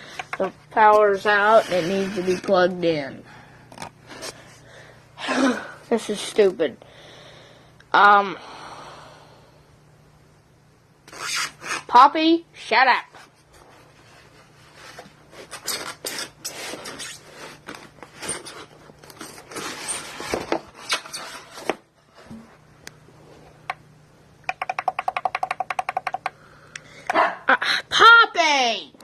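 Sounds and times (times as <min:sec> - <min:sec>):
packaging scraping and rubbing: 0:01.3 - 0:02.6, 0:14.7 - 0:21.7.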